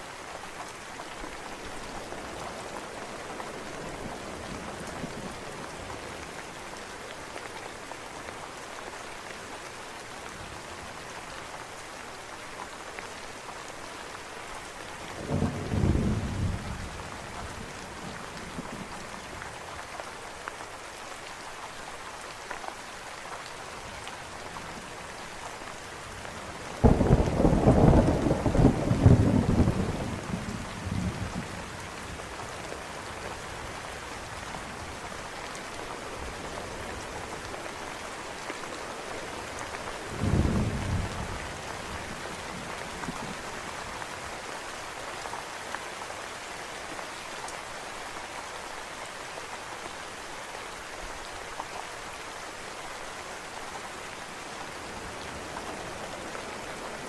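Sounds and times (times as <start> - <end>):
steady rain: 0.0 - 57.0
thunder rumbling: 26.8 - 31.6.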